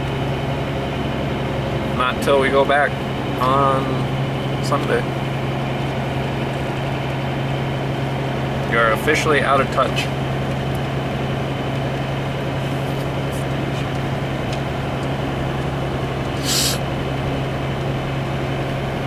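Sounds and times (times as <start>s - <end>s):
truck engine and road noise: 0.0s - 19.0s
short swish: 16.4s - 16.8s.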